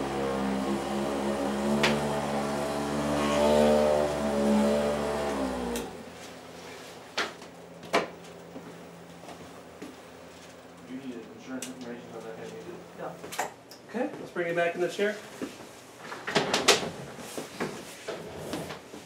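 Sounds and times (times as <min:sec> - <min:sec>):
electric massager motor humming: 0:00.0 - 0:06.2.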